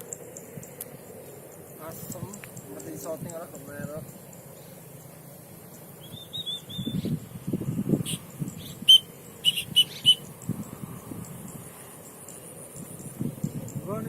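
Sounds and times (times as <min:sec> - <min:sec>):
bird chirping calls: 0:00.0 - 0:14.0.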